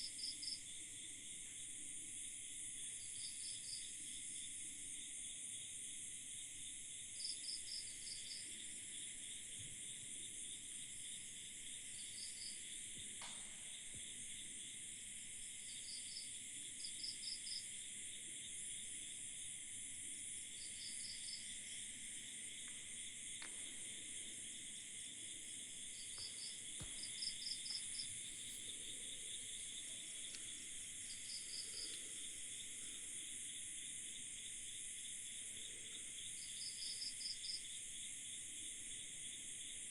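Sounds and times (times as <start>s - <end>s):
insects trilling: 7.2s - 39.9s
quick insect chirps: 25.4s - 33.6s.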